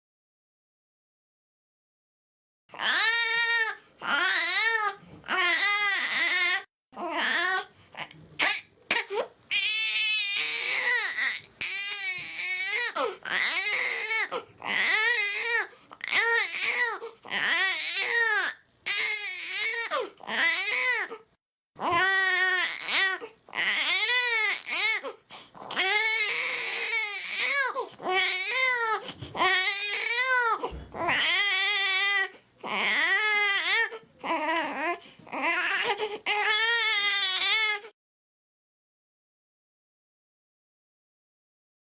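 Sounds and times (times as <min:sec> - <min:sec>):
infant crying: 0:02.7 - 0:38.0
infant gasping for breath: 0:13.0 - 0:14.6, 0:15.6 - 0:16.0, 0:16.8 - 0:17.3, 0:19.9 - 0:20.2, 0:25.0 - 0:25.8, 0:27.5 - 0:28.1, 0:28.9 - 0:29.5, 0:30.5 - 0:31.1, 0:34.9 - 0:36.4.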